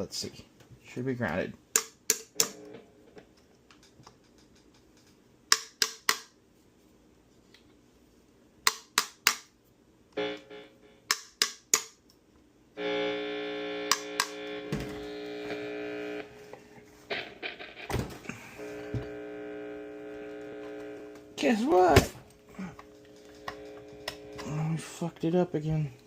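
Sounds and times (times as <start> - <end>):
electric guitar steady tone: 2.3 - 3.2, 10.2 - 11.1, 12.8 - 26.0
sharp clicks: 13.9 - 14.4, 20.2 - 24.6.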